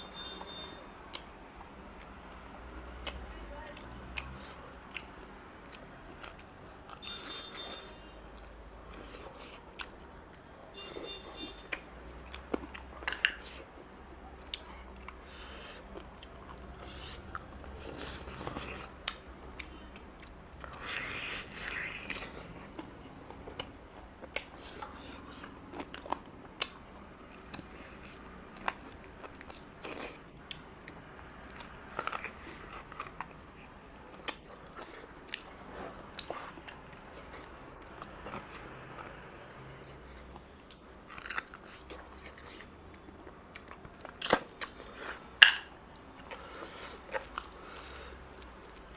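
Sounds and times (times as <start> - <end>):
person chewing food: 0.0 - 48.9
crunchy bites: 43.6 - 48.9.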